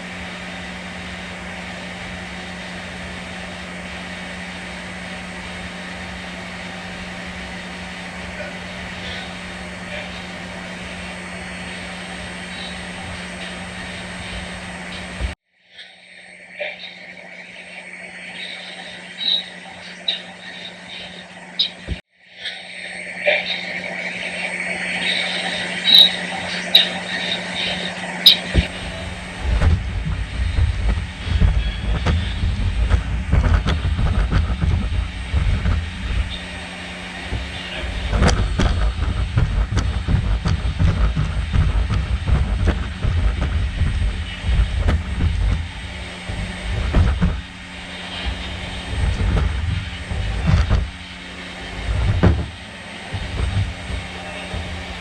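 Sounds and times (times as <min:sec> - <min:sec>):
low motor hum: 0:00.0 - 0:55.0
robot dog feet thudding: 0:37.4 - 0:51.0, 0:51.7 - 0:55.0.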